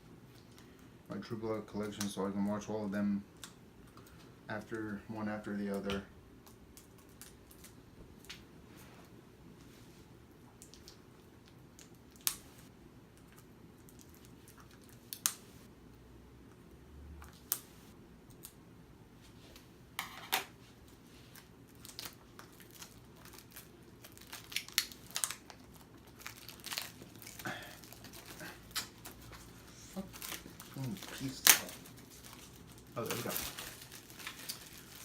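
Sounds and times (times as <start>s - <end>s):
shrink wrap crinkling and tearing: 6.4s - 8.4s, 10.6s - 15.6s, 20.8s - 35.0s.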